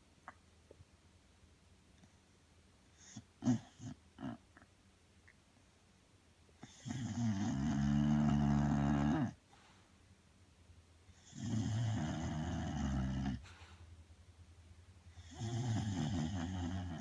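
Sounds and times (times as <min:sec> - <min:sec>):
dog snoring loudly: 0:03.0 - 0:04.4, 0:06.6 - 0:09.4, 0:11.2 - 0:13.5, 0:15.1 - 0:17.0.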